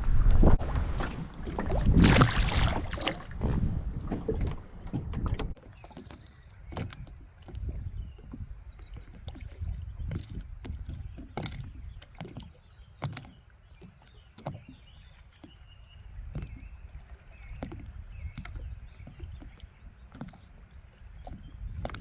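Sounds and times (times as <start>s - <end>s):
low rumble: 0.0s - 5.6s
water lapping against a boat: 0.0s - 22.0s.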